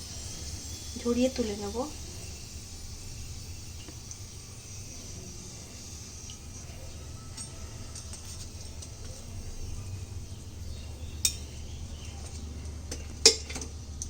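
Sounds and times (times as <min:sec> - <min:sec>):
cutlets frying in oil: 0:00.0 - 0:14.0
metal utensil clinking on cookware: 0:12.2 - 0:13.7.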